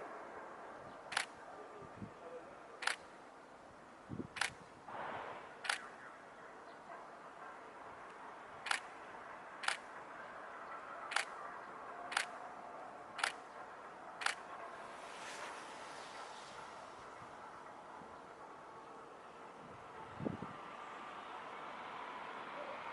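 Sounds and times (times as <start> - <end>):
camera shutter clicks: 1.1 - 1.4, 2.8 - 3.0, 4.4 - 4.6, 5.6 - 5.9, 8.7 - 8.9, 9.6 - 9.9, 11.1 - 11.3, 12.1 - 12.4, 13.2 - 13.4, 14.2 - 14.4.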